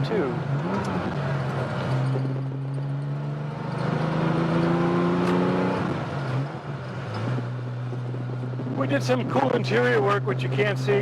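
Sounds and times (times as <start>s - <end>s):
car engine accelerating: 0.0s - 11.0s.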